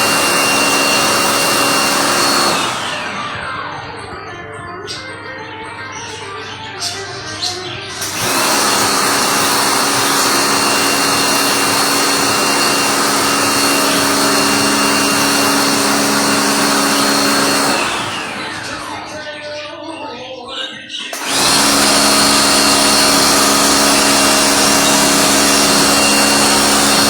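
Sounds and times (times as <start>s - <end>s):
electric motor whining: 0.0s - 4.3s, 7.9s - 19.3s, 21.1s - 27.0s.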